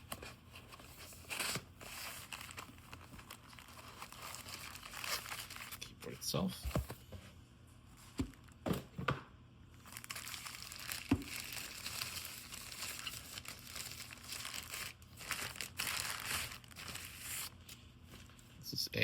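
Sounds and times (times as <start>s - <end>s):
packaging crinkling: 0.1s - 5.9s, 9.8s - 18.4s.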